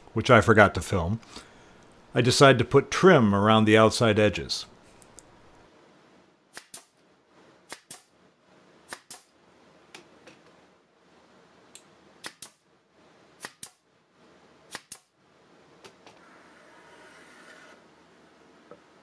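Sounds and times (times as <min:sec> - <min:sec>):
nail gun firing into wood: 0:07.7 - 0:08.1, 0:14.7 - 0:15.1.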